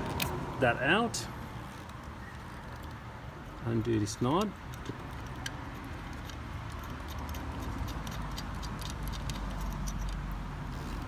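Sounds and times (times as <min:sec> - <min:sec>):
metallic tool clicks: 0:04.4 - 0:10.3.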